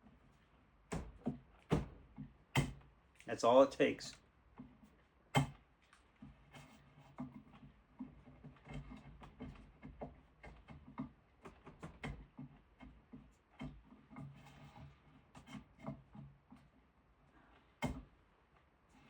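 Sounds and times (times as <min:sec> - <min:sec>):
scraping and tapping on wood: 0:04.5 - 0:16.8.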